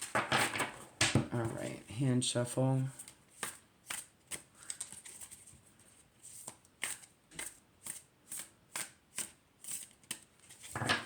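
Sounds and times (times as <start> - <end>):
cards being shuffled: 3.0 - 5.6, 6.2 - 11.0.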